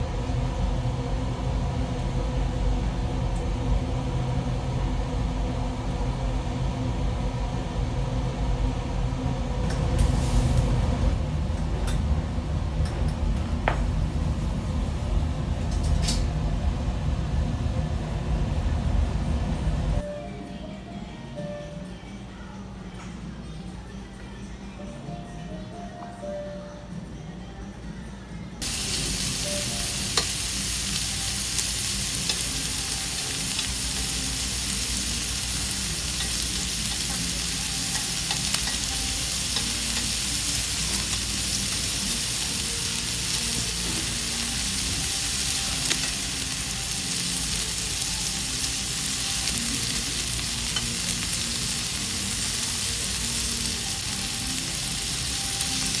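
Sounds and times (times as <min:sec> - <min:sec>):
meat sizzling on grill: 0:09.7 - 0:11.1, 0:28.6 - 0:56.0.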